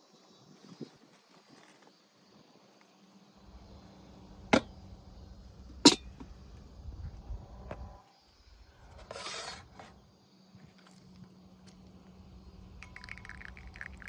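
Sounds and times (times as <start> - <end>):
low rumble: 3.5 - 8.0.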